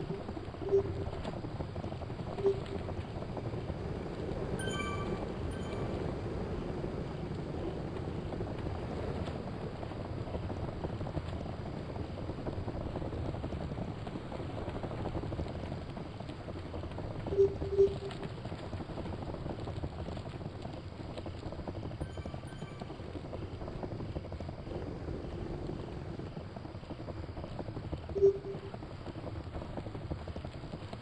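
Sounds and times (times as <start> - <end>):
wind rushing on microphone: 0.0 - 31.0
short electronic beeps: 4.6 - 6.0, 17.4 - 18.2, 28.2 - 28.7.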